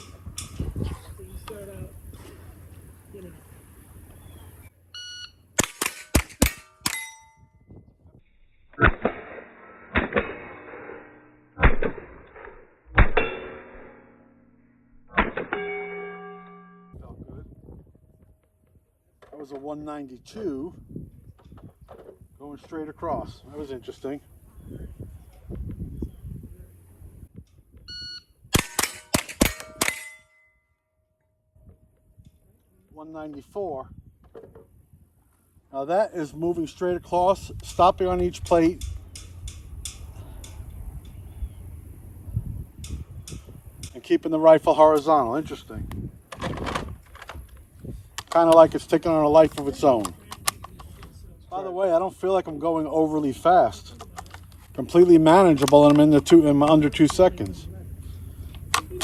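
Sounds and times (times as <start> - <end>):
steel plates ringing: 0.0 - 0.7, 5.9 - 7.6, 13.0 - 17.0, 28.7 - 30.8
shot timer beep: 5.0 - 5.4
rifle shots: 5.6 - 7.2, 8.8 - 14.0, 28.5 - 30.2
loud metallic clangs: 8.8 - 17.0, 28.6 - 30.6.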